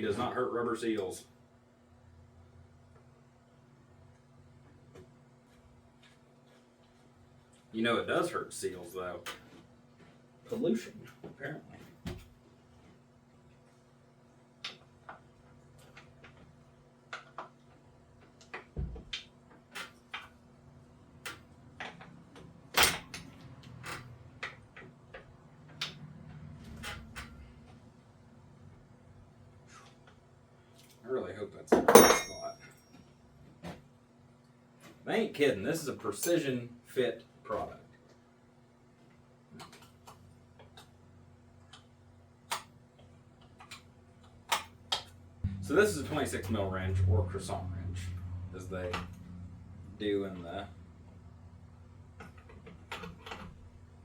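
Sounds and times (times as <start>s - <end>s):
faint low hum: 45.3s - 54.0s.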